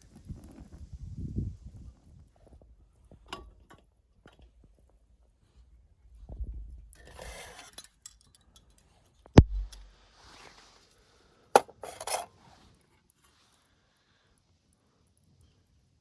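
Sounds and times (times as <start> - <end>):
tableware rustling: 11.6 - 12.4.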